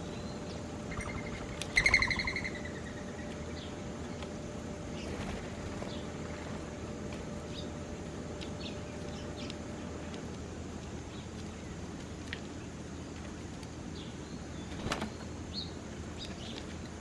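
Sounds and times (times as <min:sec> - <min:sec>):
birds chirping: 0:00.0 - 0:10.2
low background rumble: 0:00.0 - 0:17.0.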